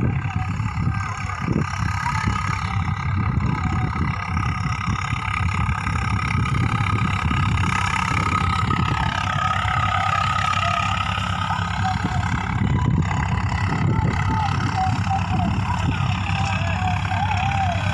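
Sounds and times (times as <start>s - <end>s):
tractor diesel engine running: 0.0s - 17.9s.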